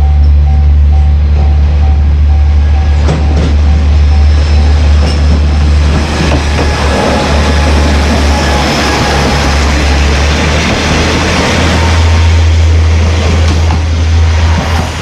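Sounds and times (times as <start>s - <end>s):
level crossing warning bell: 0.0s - 5.1s
diesel railcar engine drone: 0.0s - 15.0s
train wheels clicking on rail joints: 0.0s - 15.0s.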